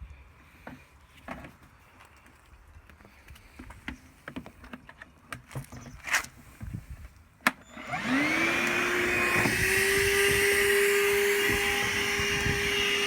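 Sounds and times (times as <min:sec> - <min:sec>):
vacuum motor whining: 0:07.6 - 0:13.0.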